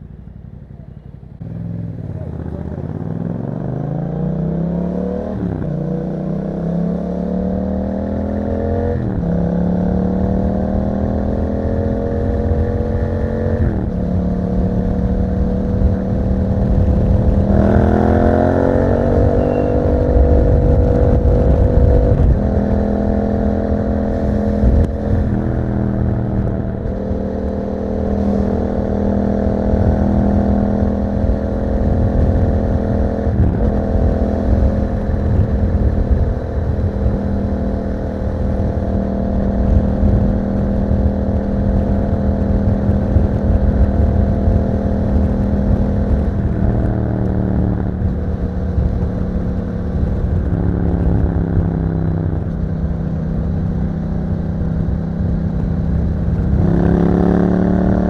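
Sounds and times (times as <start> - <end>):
motorcycle engine revving through gears: 0.0 - 58.0
road and wind noise: 0.0 - 58.0.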